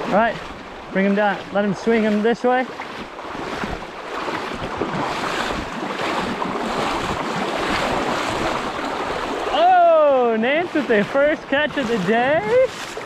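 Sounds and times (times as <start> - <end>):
creek water rushing and splashing: 0.0 - 13.0
wind buffeting microphone: 2.7 - 13.0.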